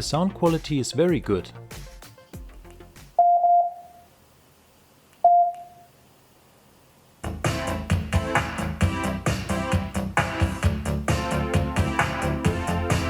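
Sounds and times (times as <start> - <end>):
electronic beeps: 3.2 - 4.0, 5.2 - 5.9
music with heavy bass: 7.2 - 13.0.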